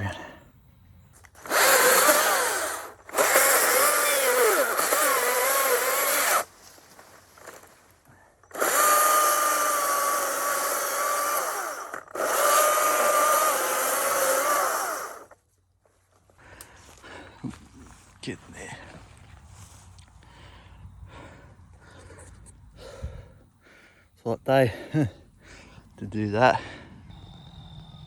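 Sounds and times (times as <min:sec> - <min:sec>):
chainsaw cutting wood: 0:01.3 - 0:07.7, 0:08.4 - 0:15.4.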